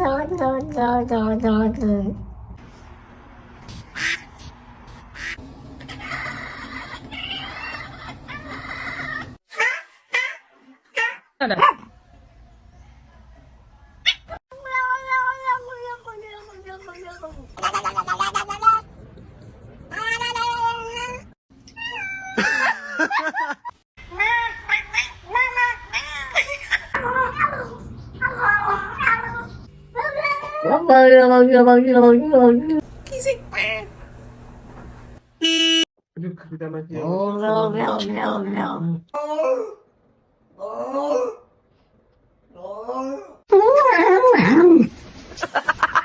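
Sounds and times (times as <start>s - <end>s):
cat calling: 5.9s - 9.4s.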